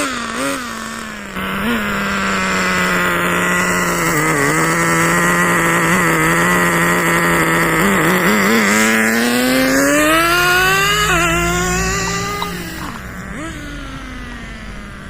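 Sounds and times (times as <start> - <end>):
rc car nitro engine revving: 0.0 - 15.0.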